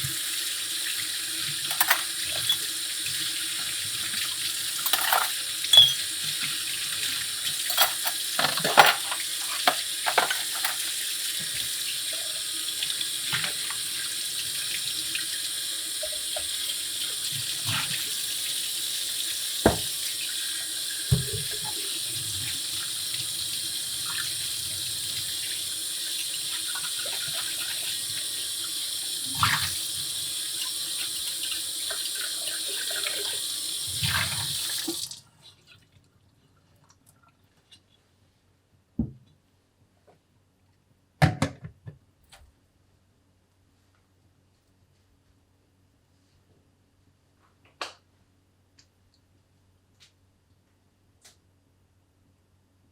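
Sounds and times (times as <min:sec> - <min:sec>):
tap water running into sink: 0:00.0 - 0:35.2
knocks and clinks: 0:04.9 - 0:06.1.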